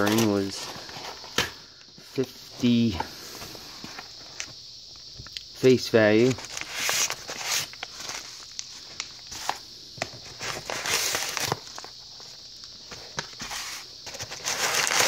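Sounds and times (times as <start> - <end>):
packaging crinkling and rustling: 0.0 - 1.5, 6.2 - 15.0.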